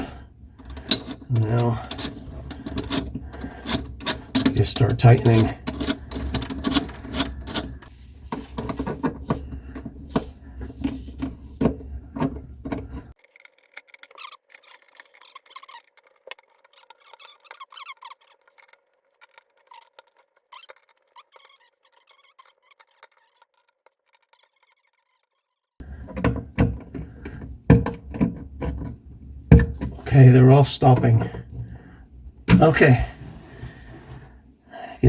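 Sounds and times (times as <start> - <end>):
screws being tightened: 0.0 - 13.1, 25.8 - 33.1.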